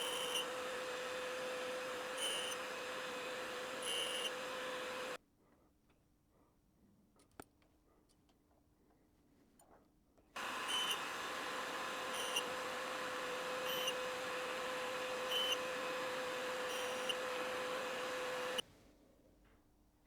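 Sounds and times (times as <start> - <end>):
grinder hum and hiss: 0.0 - 5.2, 10.4 - 18.6
sharp high grinding sound: 0.0 - 5.2, 10.4 - 18.6.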